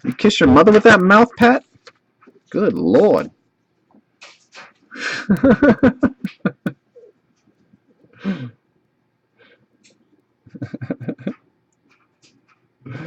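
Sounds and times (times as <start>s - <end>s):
man laughing: 5.0s - 6.8s, 10.5s - 11.4s.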